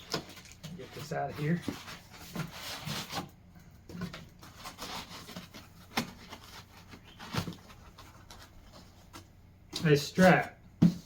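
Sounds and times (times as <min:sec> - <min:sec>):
hands rustling packaging: 0:00.0 - 0:10.6.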